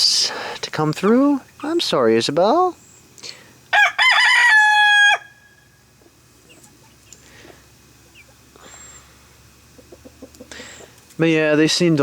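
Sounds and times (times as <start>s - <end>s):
chickens clucking: 0.8s - 2.1s, 5.9s - 11.2s.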